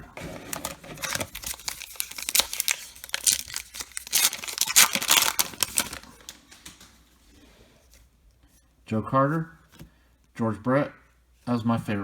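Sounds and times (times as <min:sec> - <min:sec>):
wrapper tearing and crinkling: 0:00.0 - 0:06.9.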